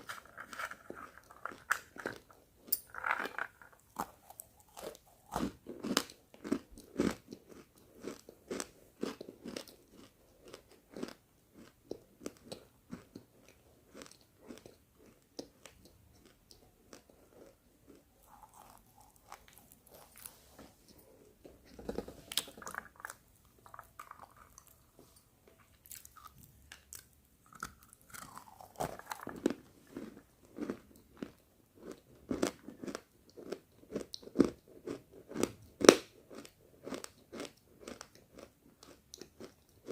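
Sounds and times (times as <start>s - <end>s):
chalk being chewed: 11.0s - 21.1s.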